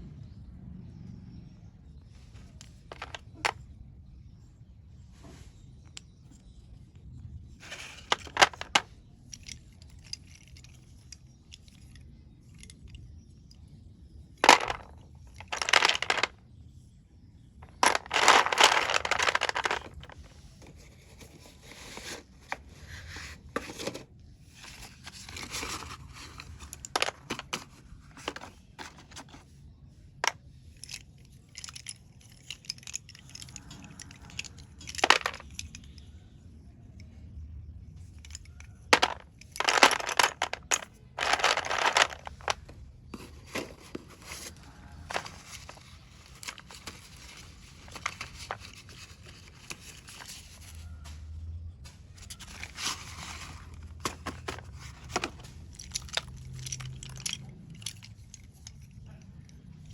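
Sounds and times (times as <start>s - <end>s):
pencils scraping: 7.6s - 12.8s, 14.4s - 16.3s, 17.6s - 29.5s, 30.8s - 36.0s, 38.3s - 50.8s, 52.2s - 59.9s
pencils clicking together: 38.3s - 42.6s.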